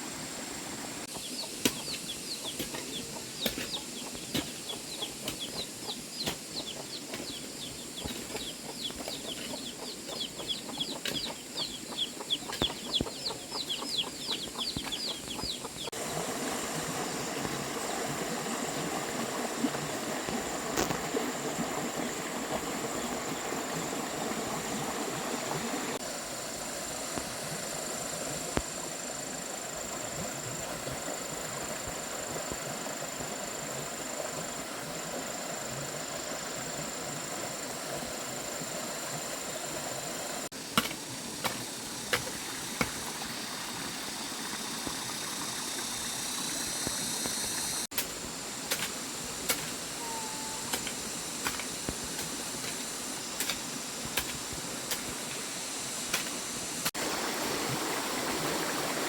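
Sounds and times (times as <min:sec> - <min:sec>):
steady hiss: 0:00.0 - 0:59.0
chicks peeping: 0:01.1 - 0:16.0.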